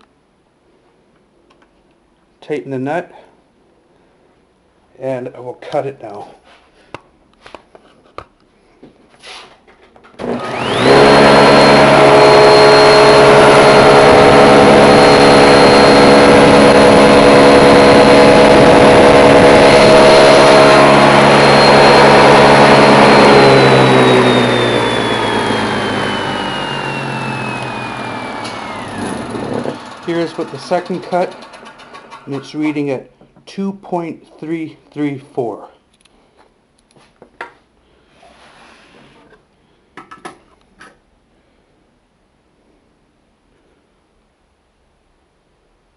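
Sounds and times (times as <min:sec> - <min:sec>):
saw winding down whine: 0:10.2 - 0:33.0
table saw running: 0:10.2 - 0:33.0.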